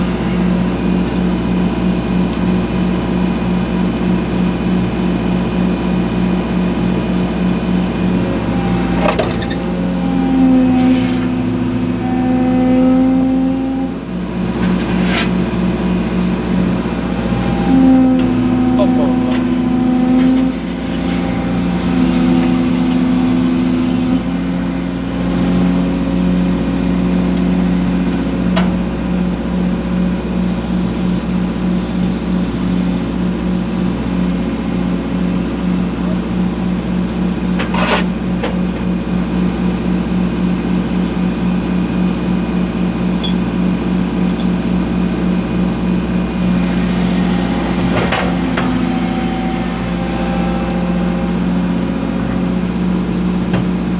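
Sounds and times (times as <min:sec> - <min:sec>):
excavator diesel engine droning: 0:00.0 - 0:53.9
higher steady tone: 0:06.2 - 0:14.4, 0:15.5 - 0:28.3.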